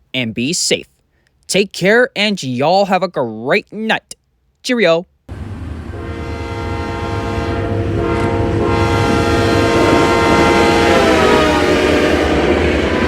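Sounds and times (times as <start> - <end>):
diesel locomotive engine rumble: 5.3 - 13.0
train air horn blast: 5.3 - 13.0.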